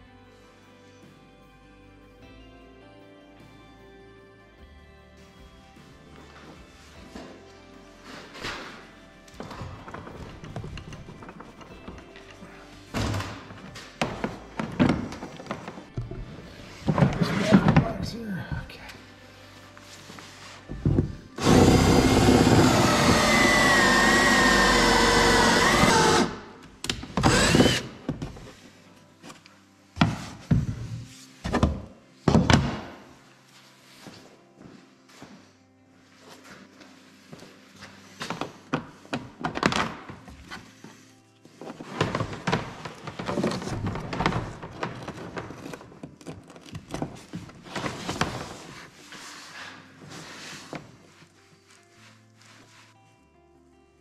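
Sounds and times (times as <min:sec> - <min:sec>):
tools and parts knocking and rustling: 0:09.4 - 0:18.1
power tool motor running: 0:21.4 - 0:26.4, 0:27.2 - 0:28.0.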